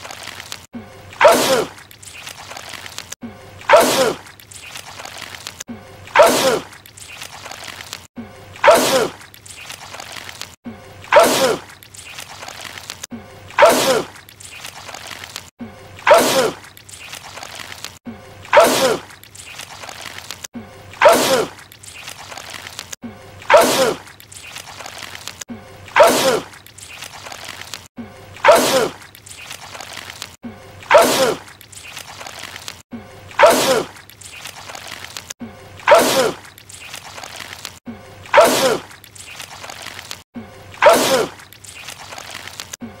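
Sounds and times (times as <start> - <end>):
man sneezing: 40.8 - 41.4.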